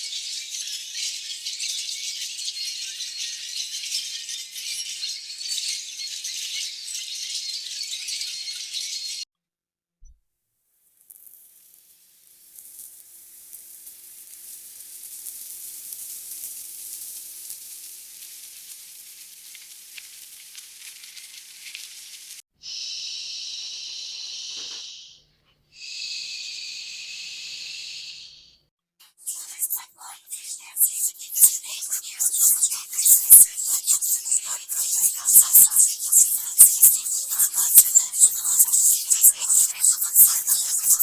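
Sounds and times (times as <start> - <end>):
high hissing noise: 22.7 - 25.2, 25.8 - 41.0
narrow higher hiss bursts: 29.2 - 41.0.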